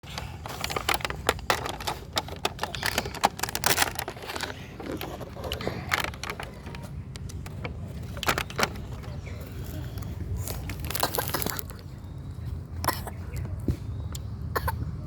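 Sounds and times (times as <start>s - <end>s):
person chewing crunchy food: 9.2s - 11.9s.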